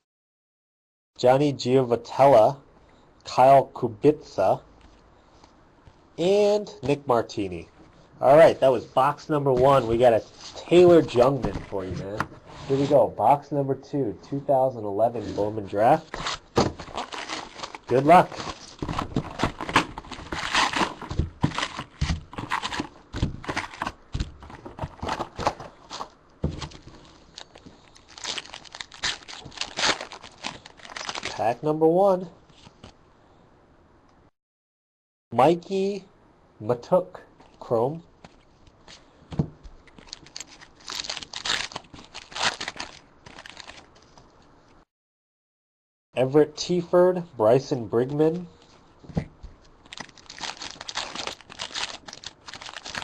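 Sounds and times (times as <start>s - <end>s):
foil packs crinkling: 15.8s - 31.4s, 39.8s - 44.2s, 49.8s - 53.0s.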